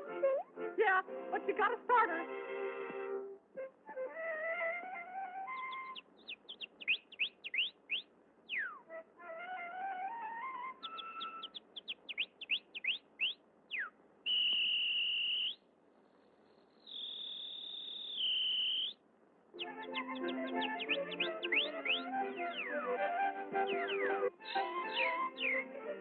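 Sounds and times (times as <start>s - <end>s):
orchestral music: 0.0s - 3.3s, 19.6s - 26.0s
whistled bird chirps: 3.9s - 9.0s, 10.6s - 15.6s, 16.4s - 19.0s, 19.6s - 26.0s.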